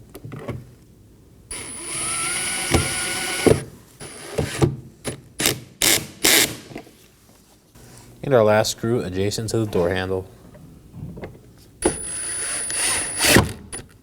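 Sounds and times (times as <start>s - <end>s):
cordless drill whining: 1.5s - 4.6s, 11.9s - 13.8s
drill trigger bursts: 1.5s - 4.6s, 11.8s - 13.8s.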